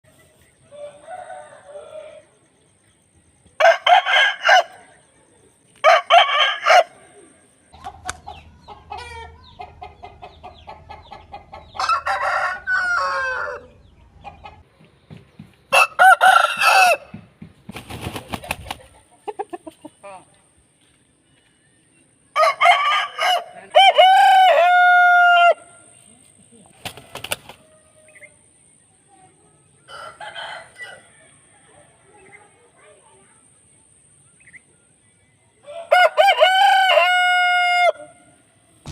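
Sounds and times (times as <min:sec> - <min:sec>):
roosters crowing: 0:00.6 - 0:02.5, 0:03.6 - 0:05.1, 0:05.8 - 0:07.4, 0:11.5 - 0:13.9, 0:15.7 - 0:17.3, 0:22.3 - 0:26.0, 0:29.9 - 0:31.6, 0:35.6 - 0:38.9.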